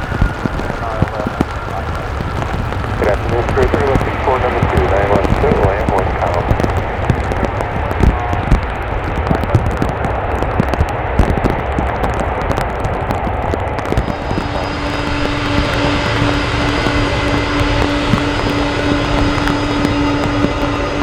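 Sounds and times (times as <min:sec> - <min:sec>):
jet engines rushing: 0:00.0 - 0:21.0
whining tone: 0:13.8 - 0:21.0.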